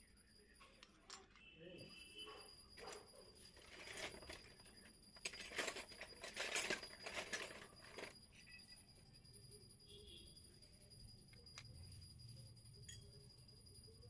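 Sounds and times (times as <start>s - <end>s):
plastic toy pieces clicking: 5.2s - 8.2s.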